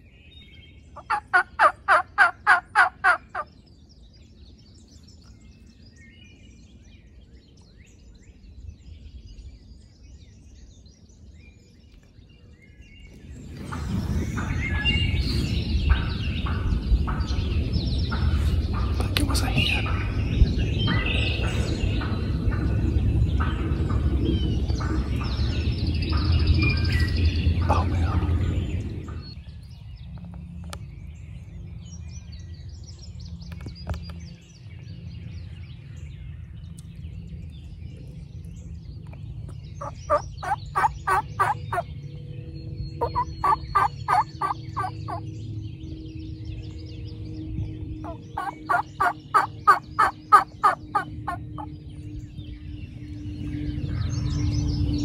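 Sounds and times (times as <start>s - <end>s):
turkey gobbling: 1.0s - 3.4s, 39.8s - 41.8s, 43.0s - 45.2s, 48.0s - 51.4s.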